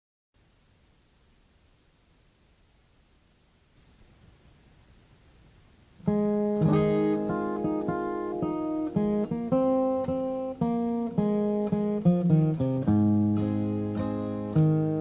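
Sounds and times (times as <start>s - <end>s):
acoustic guitar strummed and picked: 6.0s - 15.0s.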